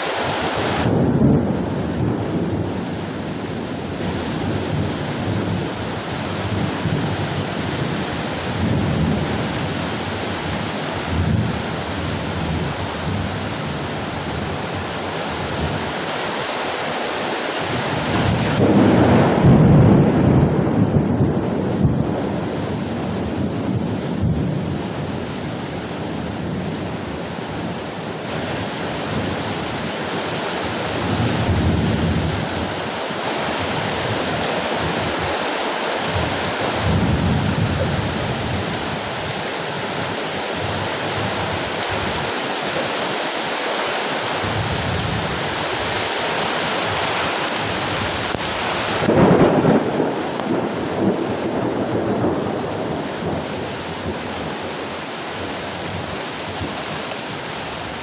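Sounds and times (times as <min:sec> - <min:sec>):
heavy rain falling: 0:00.0 - 0:58.0
thunder rumbling: 0:00.6 - 0:15.8, 0:17.6 - 0:42.4, 0:44.4 - 0:58.0.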